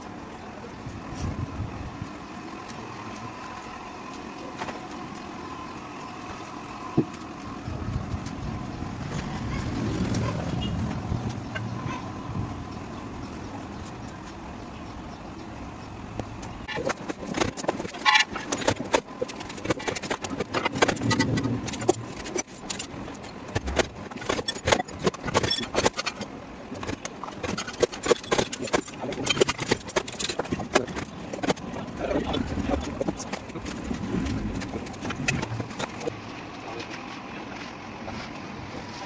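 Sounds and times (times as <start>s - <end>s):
steady low rumble: 30.4s - 36.7s.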